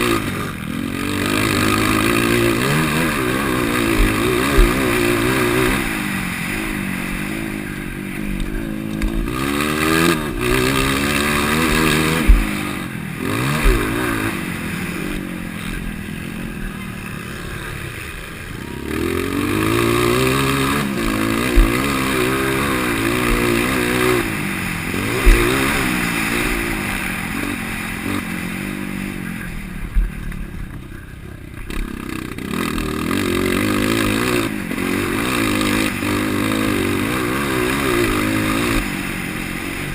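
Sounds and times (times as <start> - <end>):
dirt bike engine revving: 0.0 - 39.9
sharp thumps: 1.2 - 5.9, 7.8 - 14.3, 19.6 - 24.3, 25.0 - 27.1.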